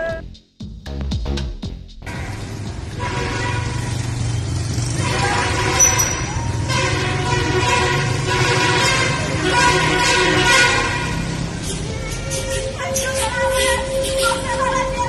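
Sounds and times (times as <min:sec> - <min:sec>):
multi-tone bus horn tune: 0:00.0 - 0:00.2, 0:02.8 - 0:15.0
bus engine running: 0:02.0 - 0:15.0.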